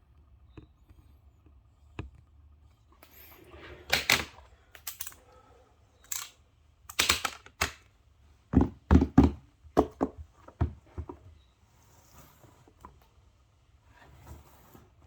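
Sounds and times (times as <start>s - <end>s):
soft rustle: 11.2s - 15.0s.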